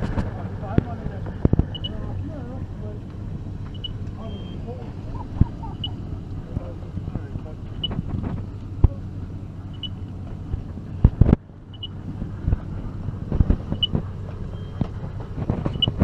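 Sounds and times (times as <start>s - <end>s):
engine running: 0.0s - 16.0s
short high beeps: 1.7s - 2.0s, 3.7s - 4.6s, 9.8s - 10.0s.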